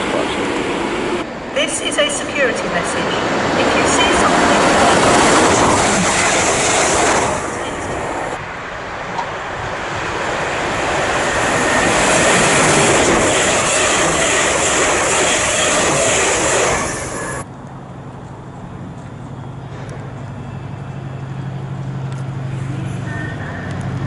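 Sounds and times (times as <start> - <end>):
train rushing past: 0.0 - 17.5.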